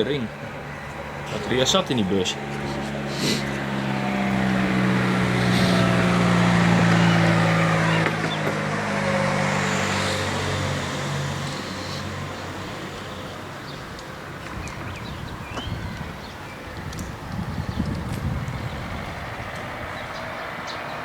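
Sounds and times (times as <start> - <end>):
vehicle engine running: 0.0 - 13.8.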